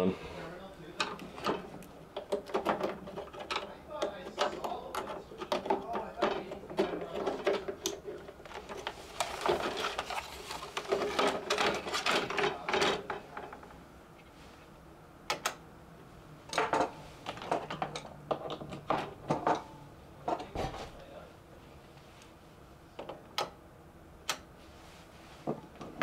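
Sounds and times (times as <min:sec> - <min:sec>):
plastic and metal parts clattering: 0:01.0 - 0:13.8, 0:16.5 - 0:20.9.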